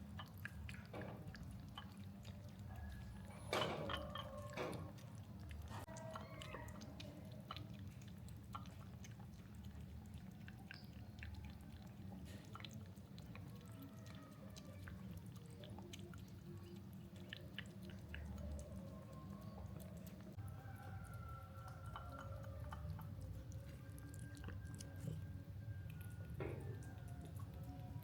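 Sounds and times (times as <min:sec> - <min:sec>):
cat chewing clicks: 0:00.2 - 0:25.3.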